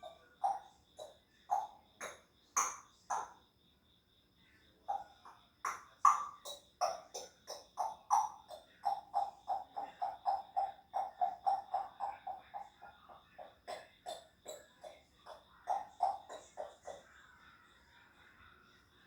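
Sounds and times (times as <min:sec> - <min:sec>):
parrot making pitched pops: 0:01.5 - 0:03.3, 0:05.7 - 0:12.2.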